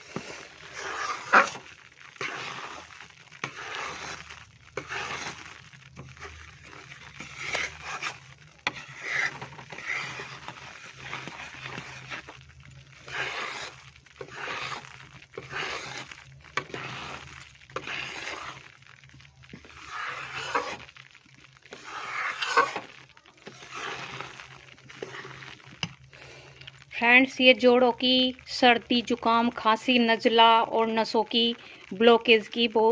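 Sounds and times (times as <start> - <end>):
spatula scraping metal pan: 0.0 - 26.3.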